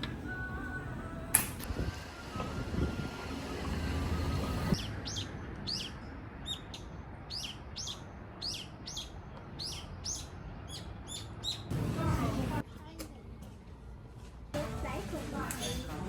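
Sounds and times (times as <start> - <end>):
low hum: 0.0 - 4.8
bird chirping: 4.2 - 11.7.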